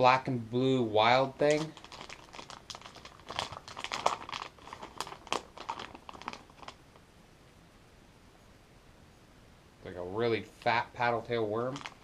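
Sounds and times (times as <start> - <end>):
plastic packaging crinkling: 1.0 - 6.9, 11.6 - 12.0.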